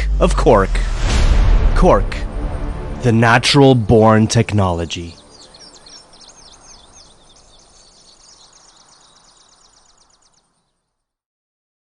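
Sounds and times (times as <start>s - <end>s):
steady outdoor hiss: 0.1s - 11.1s
songbirds chirping and trilling: 1.8s - 11.1s.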